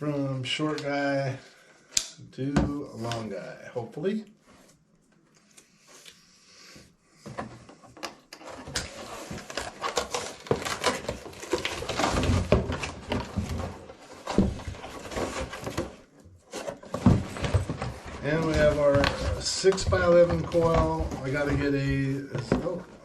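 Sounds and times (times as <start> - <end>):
packaging crackling and rustling: 8.4 - 22.8.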